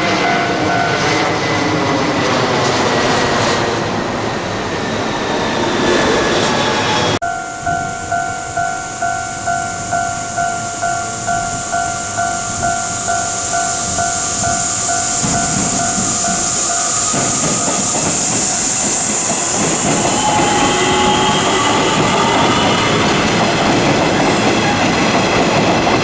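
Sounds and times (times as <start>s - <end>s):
level crossing bell ringing: 0.0s - 1.5s, 7.2s - 18.1s
electric train running: 0.0s - 26.0s
train wheel clatter: 9.4s - 26.0s.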